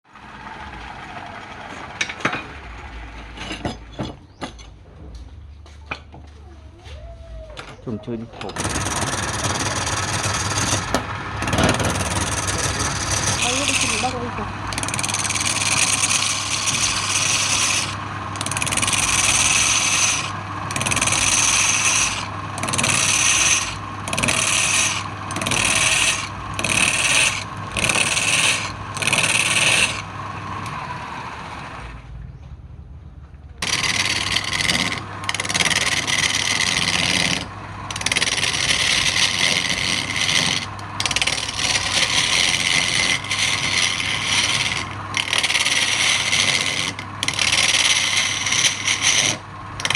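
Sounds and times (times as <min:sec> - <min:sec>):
wood lathe motor hum: 0:00.2 - 0:03.2, 0:08.4 - 0:32.0, 0:33.6 - 0:49.9
turning tool rasping wood: 0:08.5 - 0:31.9, 0:33.6 - 0:49.9.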